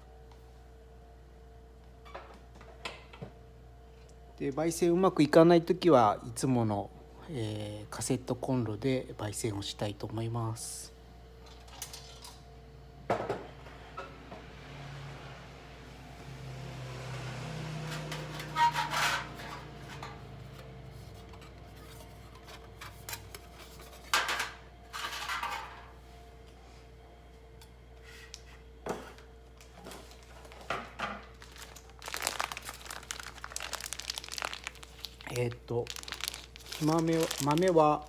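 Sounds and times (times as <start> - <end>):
packaging bag crinkling: 29.6 - 38.0.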